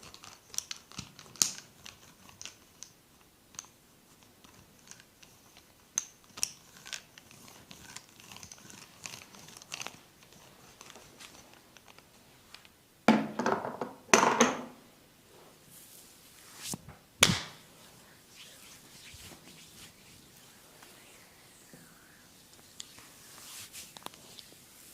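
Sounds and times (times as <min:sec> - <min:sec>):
hands rubbing skin and hair: 0:15.3 - 0:24.9.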